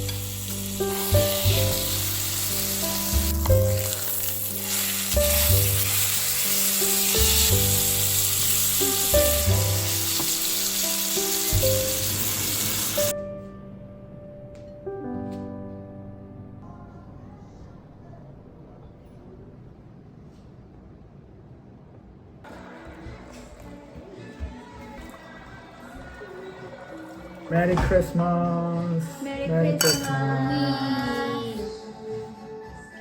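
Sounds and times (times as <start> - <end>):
food sizzling in a pan: 0.0 - 13.1.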